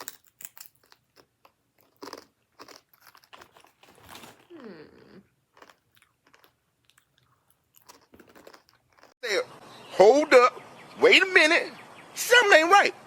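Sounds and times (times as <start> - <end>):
person chewing crunchy pretzels: 0.0 - 9.2.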